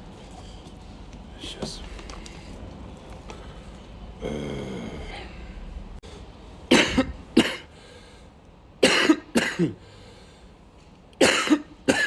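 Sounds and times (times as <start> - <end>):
man coughing: 6.7 - 7.7, 8.8 - 9.8, 11.2 - 12.0.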